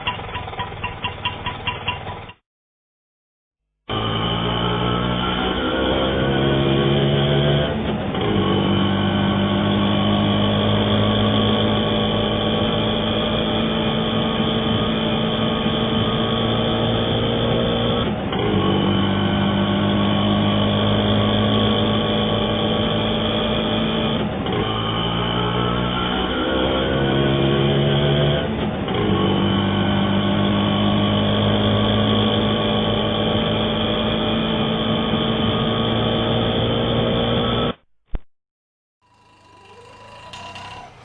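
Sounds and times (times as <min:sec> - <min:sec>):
auto rickshaw engine running: 0:00.0 - 0:02.4, 0:03.9 - 0:37.8, 0:39.0 - 0:41.0.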